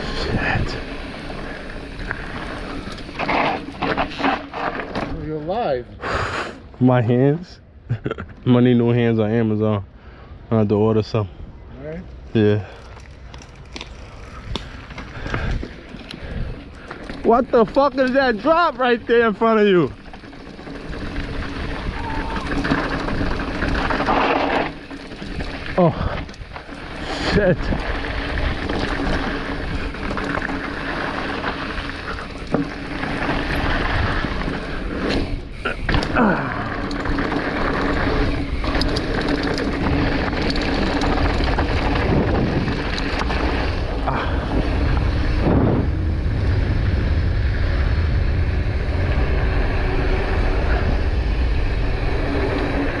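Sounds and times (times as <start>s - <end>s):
tyres rolling on dirt trail: 0.0s - 9.8s, 12.1s - 53.0s
bike knocks and rattles: 2.0s - 5.6s, 27.6s - 45.9s
wind on microphone: 41.0s - 53.0s.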